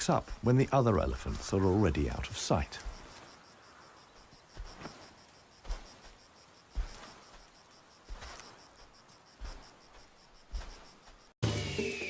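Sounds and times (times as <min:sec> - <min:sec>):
insects chirping: 0:00.0 - 0:12.0
soft low thuds: 0:04.1 - 0:11.3.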